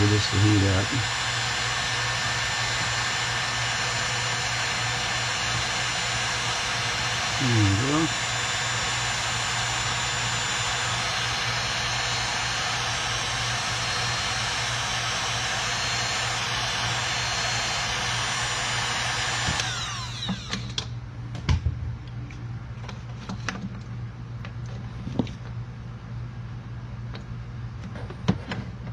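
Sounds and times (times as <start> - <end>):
heat gun blowing with motor whine: 0.0 - 21.0.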